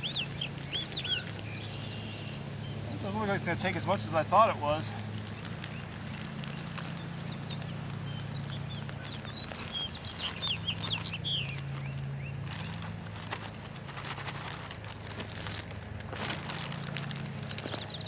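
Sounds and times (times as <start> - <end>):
birds chirping: 0.0 - 14.2, 15.6 - 18.0.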